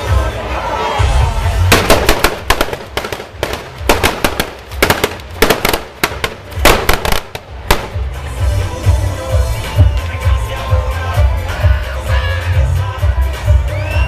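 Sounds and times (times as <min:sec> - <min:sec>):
music with heavy bass beat: 0:01.0 - 0:14.0
firecrackers banging: 0:01.6 - 0:09.0.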